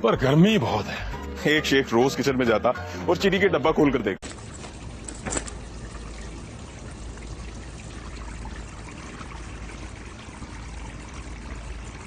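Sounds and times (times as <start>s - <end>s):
steady pouring hiss: 4.2s - 12.0s.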